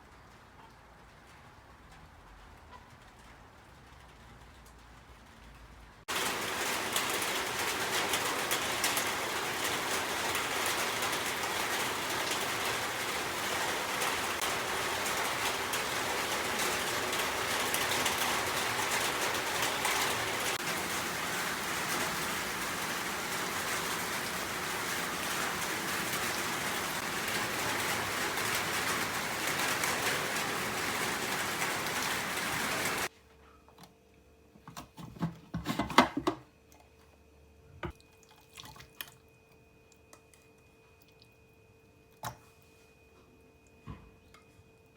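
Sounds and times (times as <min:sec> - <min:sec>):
steady rain falling: 0:00.0 - 0:33.1.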